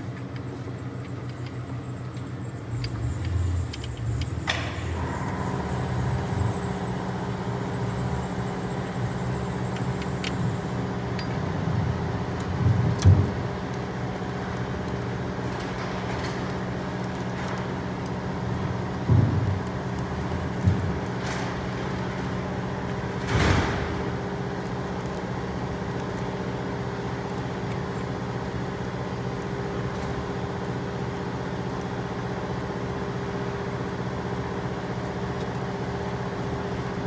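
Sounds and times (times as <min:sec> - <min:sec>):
steady mechanical hum: 0:00.0 - 0:37.0
clicks: 0:02.2 - 0:11.4.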